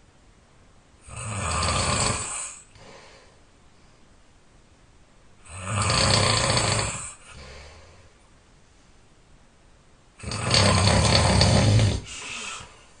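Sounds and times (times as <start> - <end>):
person snoring loudly: 1.0 - 2.6, 5.4 - 7.5, 10.2 - 12.8.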